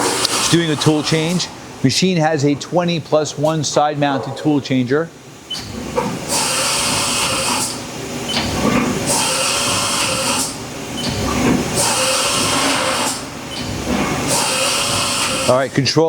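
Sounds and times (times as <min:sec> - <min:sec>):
machine high whine: 0:03.3 - 0:15.8.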